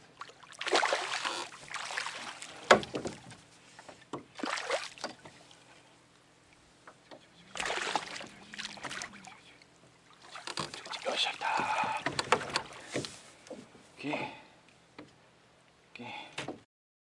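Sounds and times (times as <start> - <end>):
water sloshing against boat hull: 0.0 - 5.9, 6.5 - 14.2.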